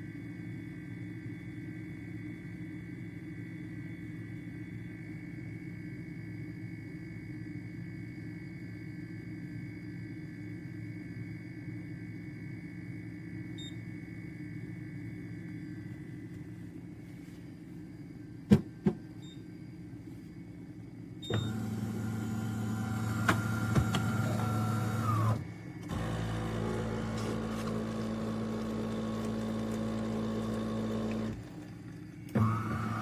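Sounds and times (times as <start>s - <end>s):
motor hum: 20.9s - 33.0s
espresso machine motor running: 21.4s - 33.0s.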